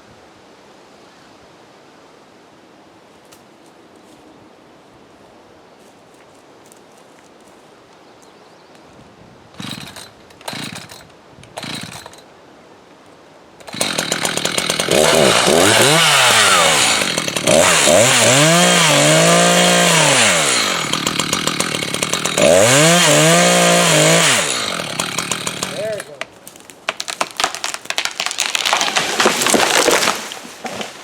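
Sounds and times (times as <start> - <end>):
chainsaw revving: 9.6 - 12.2, 13.6 - 26.2.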